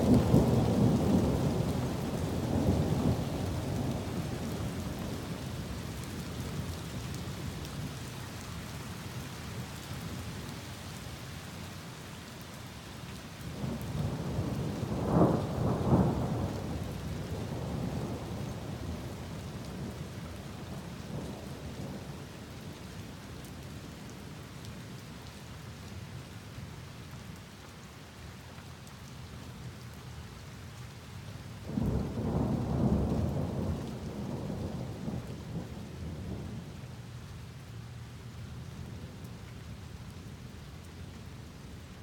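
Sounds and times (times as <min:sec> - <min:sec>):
thunder rumbling: 0:00.0 - 0:05.8, 0:31.7 - 0:36.7
heavy rain: 0:00.0 - 0:42.0.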